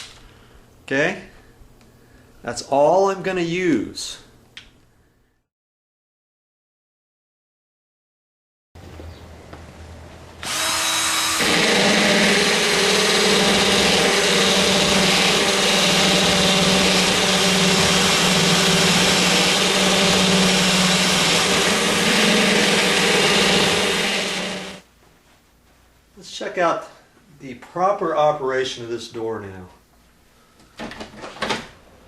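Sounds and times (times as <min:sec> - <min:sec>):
electric drill cutting metal and wood: 0:10.4 - 0:24.8.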